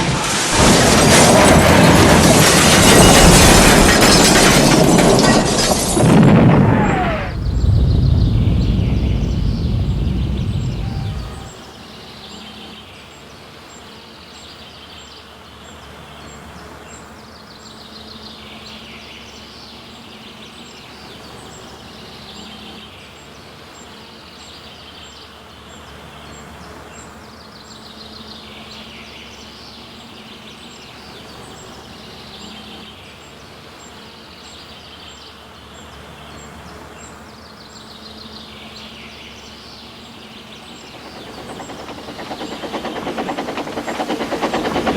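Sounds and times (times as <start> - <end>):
crash rumble: 0.0 - 11.5, 40.6 - 44.9
birdsong: 4.8 - 11.6, 27.4 - 44.9.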